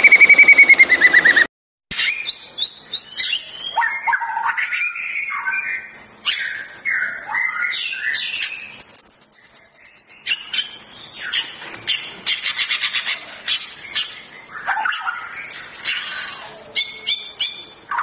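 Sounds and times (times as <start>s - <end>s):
bird singing whistled phrases: 0.0s - 11.4s.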